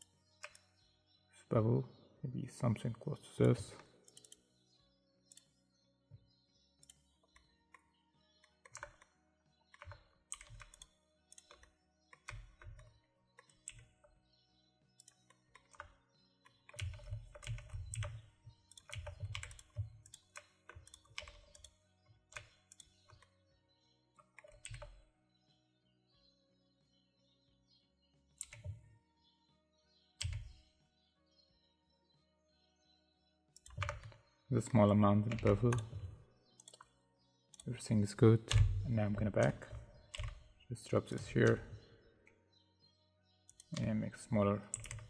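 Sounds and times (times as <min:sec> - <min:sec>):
faint background music: 0:00.0 - 0:45.0
keyboard keys clicking: 0:03.4 - 0:04.4, 0:06.8 - 0:09.1, 0:09.7 - 0:14.1, 0:15.0 - 0:21.7, 0:24.2 - 0:25.0, 0:28.4 - 0:28.8, 0:30.2 - 0:30.6, 0:33.6 - 0:34.2, 0:35.2 - 0:36.9, 0:37.6 - 0:41.9, 0:43.5 - 0:45.0.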